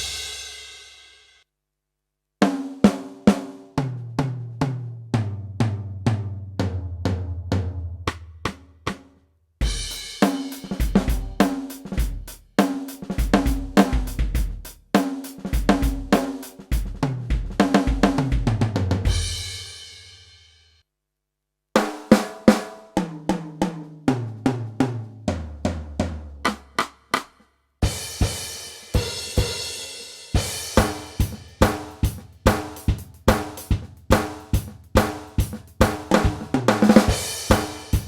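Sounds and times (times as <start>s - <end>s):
snare and tom hits: 0.0s - 1.2s, 8.1s - 19.7s, 30.3s - 38.0s
drum groove with hi-hat: 0.0s - 1.4s, 8.1s - 20.4s, 25.8s - 38.0s.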